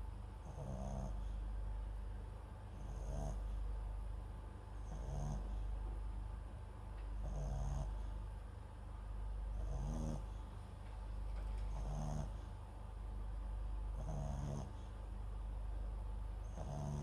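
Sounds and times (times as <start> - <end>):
dog snoring: 0.4 - 1.4, 2.7 - 3.6, 4.7 - 5.7, 7.2 - 8.3, 9.5 - 10.5, 11.6 - 12.6, 13.9 - 15.0, 16.4 - 17.0.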